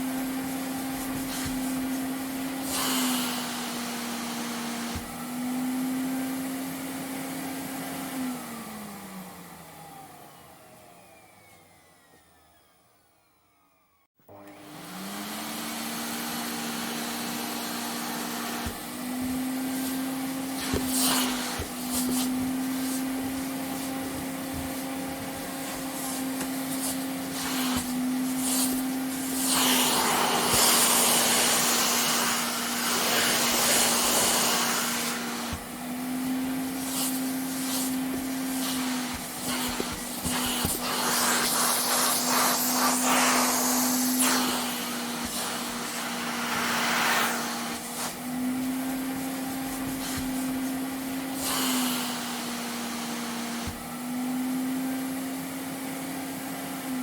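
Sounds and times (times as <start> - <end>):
vacuum cleaner motor whine: 0.0 - 57.0
vacuum cleaner switch: 18.2 - 35.8, 36.7 - 48.3.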